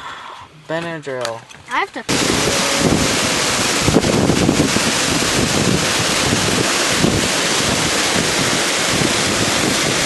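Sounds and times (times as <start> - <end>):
fast-flowing river rushing: 2.1 - 10.0.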